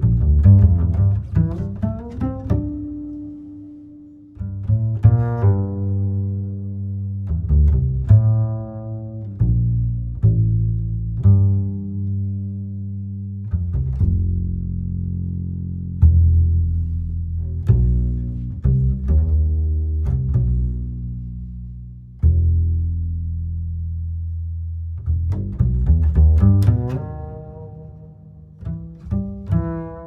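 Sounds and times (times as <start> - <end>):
low plucked string notes: 0.0 - 30.0.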